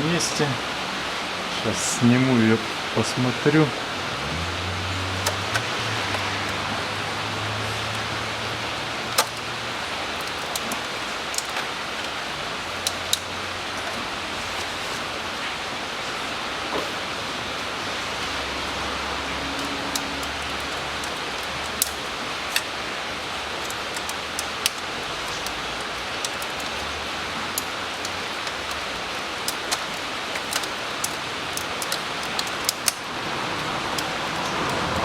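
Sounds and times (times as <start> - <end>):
steady background hiss: 0.0 - 35.0
light clicks and taps: 19.6 - 35.0.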